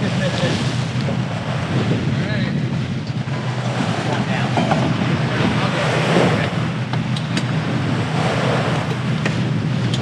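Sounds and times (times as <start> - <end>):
water rushing along hull: 0.0 - 10.0
wind buffeting microphone: 0.0 - 10.0.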